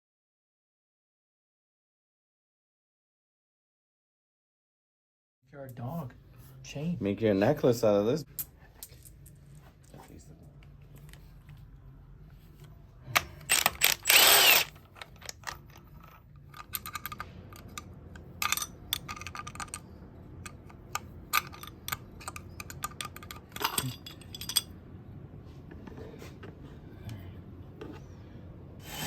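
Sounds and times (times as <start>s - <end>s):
metal tools clinking and ratcheting: 13.2s - 24.7s.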